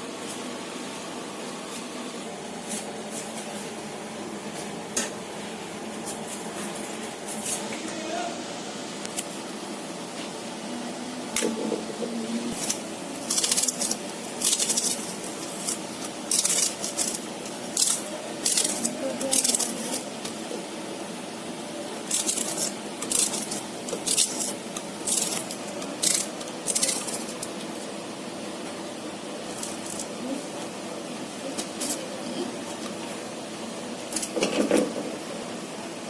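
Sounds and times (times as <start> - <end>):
steady low hum: 0.0 - 36.0
food scraping strokes: 12.5 - 20.4, 22.0 - 27.9.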